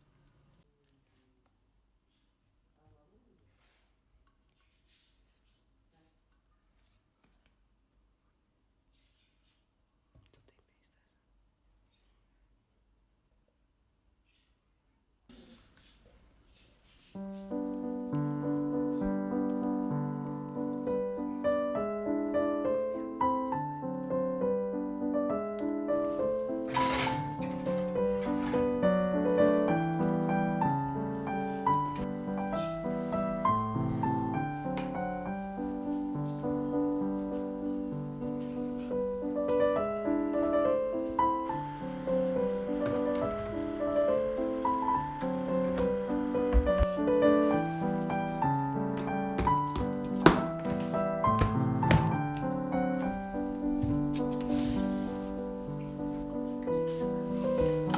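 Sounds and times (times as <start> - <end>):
gentle piano music: 17.1 - 57.9.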